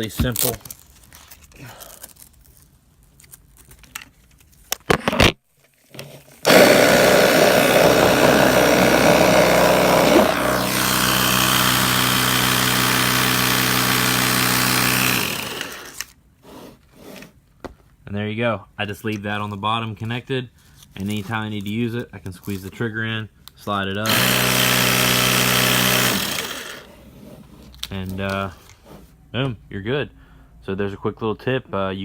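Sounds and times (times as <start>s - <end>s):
inflator compressor running: 6.4s - 16.0s, 24.0s - 27.0s.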